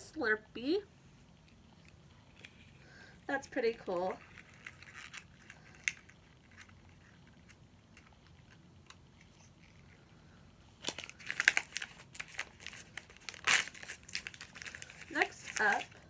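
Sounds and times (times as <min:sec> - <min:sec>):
plastic packaging crinkling: 0:03.4 - 0:10.0, 0:10.8 - 0:16.0.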